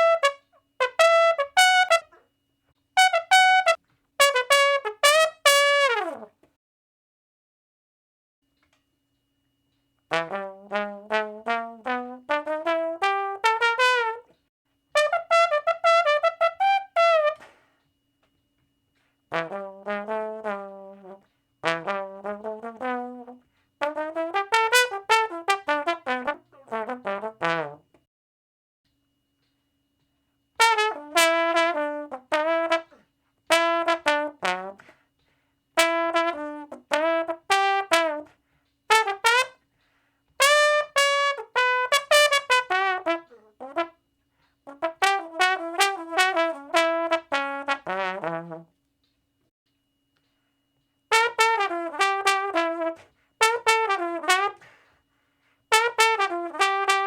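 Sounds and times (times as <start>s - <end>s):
solo brass instrument playing: 0.0s - 2.3s, 3.0s - 6.4s, 10.1s - 14.4s, 15.0s - 17.6s, 19.3s - 28.0s, 30.6s - 34.9s, 35.8s - 38.3s, 38.9s - 39.6s, 40.4s - 44.1s, 44.7s - 48.7s, 51.1s - 54.9s, 55.7s - 57.0s.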